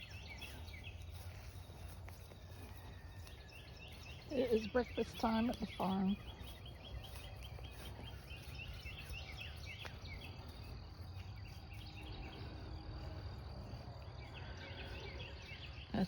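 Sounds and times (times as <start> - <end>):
small birds chirping: 0.0 - 16.0
steady low rumble: 0.0 - 16.0.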